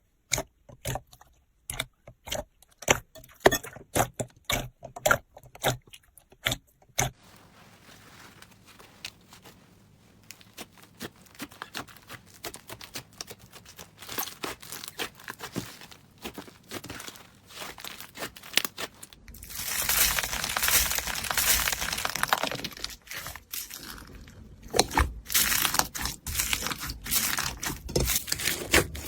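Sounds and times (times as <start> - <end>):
slime crackling and popping: 10.2 - 29.0.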